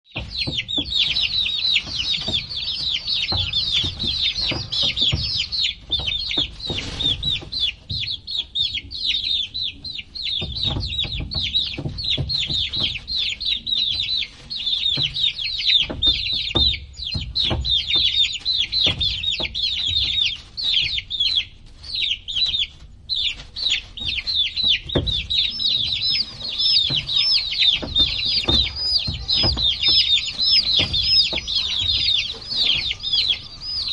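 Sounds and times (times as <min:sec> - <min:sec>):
baby chicks chirping: 0:00.1 - 0:33.9
low thumps and knocks: 0:00.2 - 0:07.4, 0:25.0 - 0:33.9.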